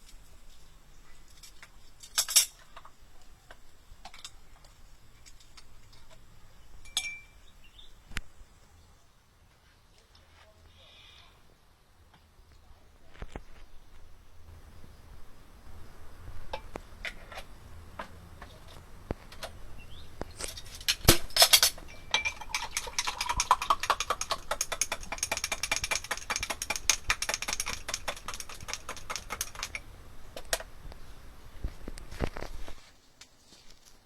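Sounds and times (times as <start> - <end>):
metal spoon stirring in glass: 21.9 - 29.8.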